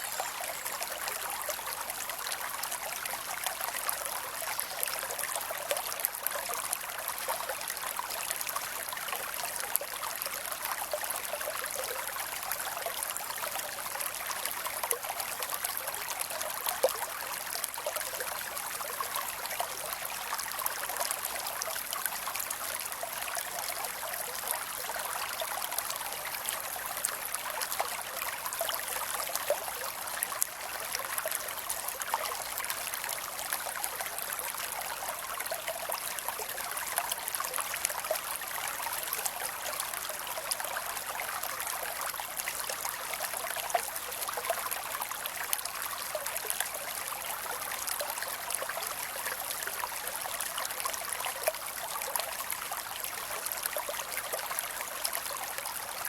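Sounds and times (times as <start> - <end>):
creek water trickling: 0.0 - 56.0.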